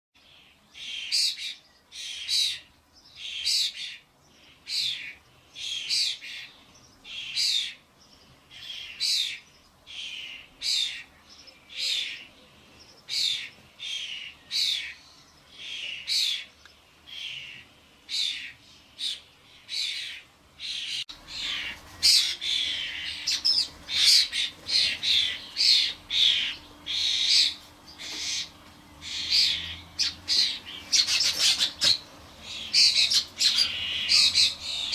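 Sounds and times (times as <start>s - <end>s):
starling fledglings begging calls: 17.1s - 34.9s.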